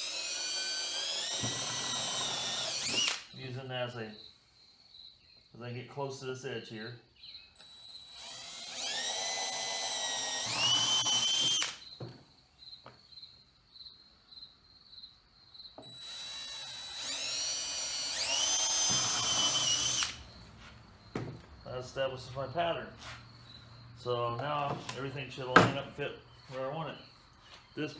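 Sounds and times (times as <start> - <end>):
power drill whining: 0.0 - 3.4, 7.6 - 11.9, 15.8 - 20.4.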